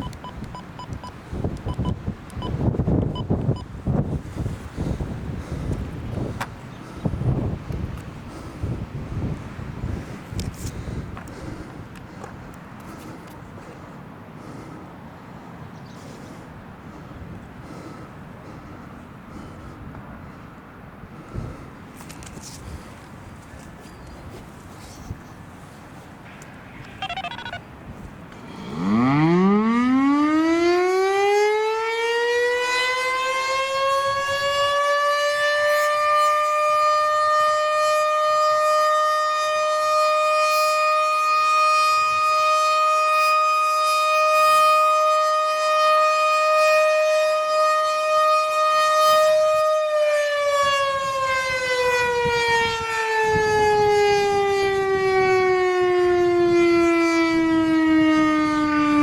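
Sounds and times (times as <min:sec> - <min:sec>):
outdoor warning siren winding: 0:00.0 - 0:03.7, 0:26.8 - 0:27.6, 0:28.7 - 0:59.0.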